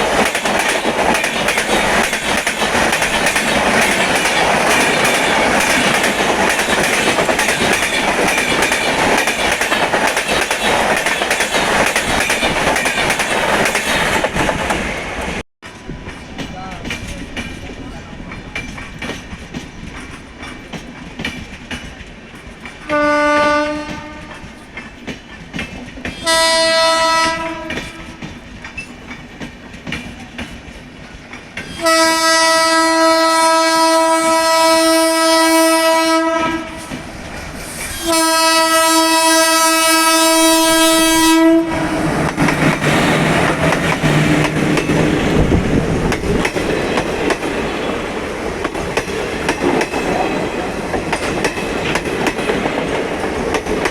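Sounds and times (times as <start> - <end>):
train passing with clickety-clack: 0.0 - 53.9
train horn blasts: 22.8 - 24.4, 26.2 - 28.2, 31.8 - 37.0, 38.0 - 42.0.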